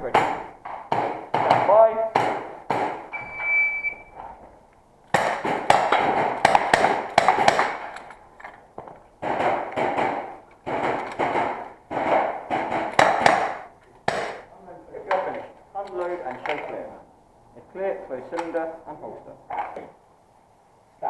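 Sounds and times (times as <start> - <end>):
shot timer beep: 3.1 - 4.1
airsoft revolver shots: 5.1 - 8.0, 9.2 - 14.5.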